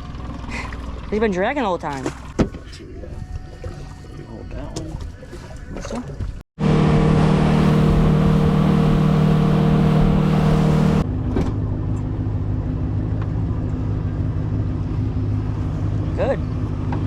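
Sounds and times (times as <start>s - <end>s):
boat engine running: 0.0s - 17.0s
wind: 0.0s - 17.0s
water rushing: 6.6s - 11.0s.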